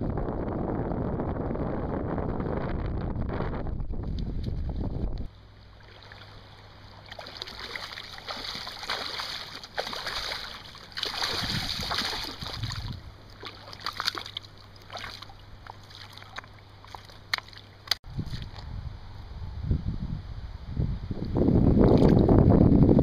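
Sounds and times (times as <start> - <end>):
wind rumbling on microphone: 0.0 - 23.0
water splashing and sloshing: 4.4 - 18.7.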